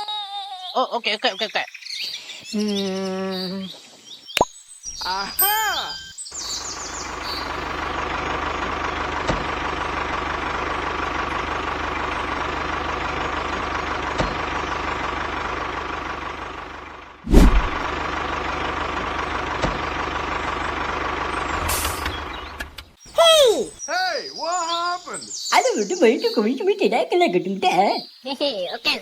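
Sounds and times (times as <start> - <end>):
engine running: 6.5 - 22.8
loud thump: 17.3 - 17.8.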